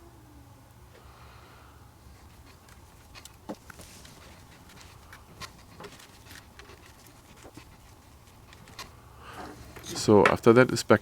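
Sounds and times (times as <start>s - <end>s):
low steady hum: 0.0s - 11.0s
plastic clicks and scrapes: 2.3s - 10.1s.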